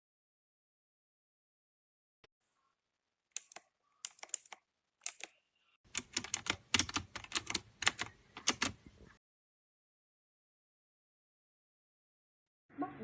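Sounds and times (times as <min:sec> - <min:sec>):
clicky mechanical keyboard typing: 0:03.4 - 0:05.3, 0:05.9 - 0:08.8.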